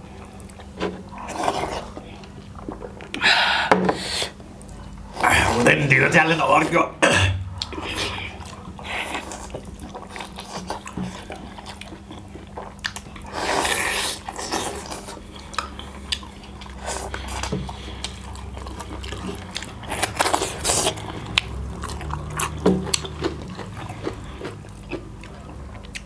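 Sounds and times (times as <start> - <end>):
biting and chewing food: 7.5 - 26.0.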